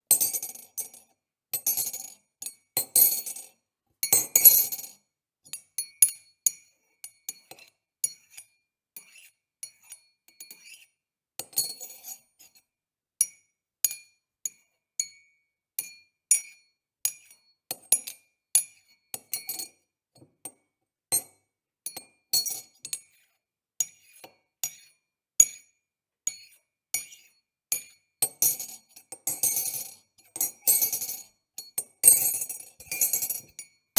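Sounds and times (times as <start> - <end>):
spoon clinking in a mug: 27.8 - 33.8.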